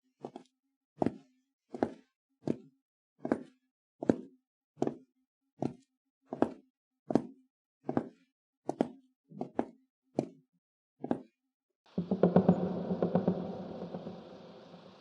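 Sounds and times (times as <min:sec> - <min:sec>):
footsteps on wooden floor: 0:12.0 - 0:14.8.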